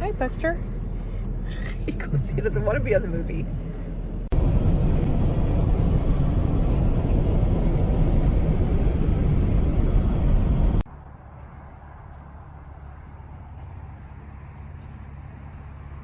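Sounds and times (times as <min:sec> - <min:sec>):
road and tyre noise: 0:00.0 - 0:16.0
vehicle driving rumble: 0:00.0 - 0:16.0.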